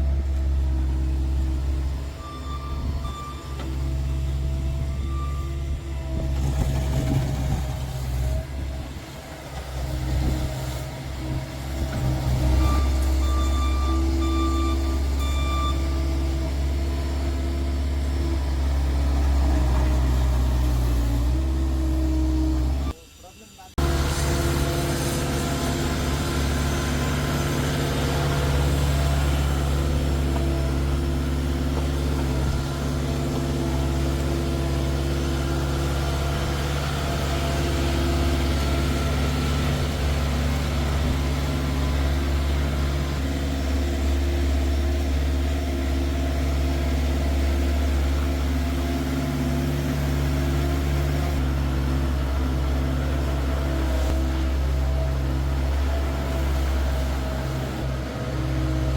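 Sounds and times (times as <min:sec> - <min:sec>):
loader engine running: 0:00.0 - 0:58.9.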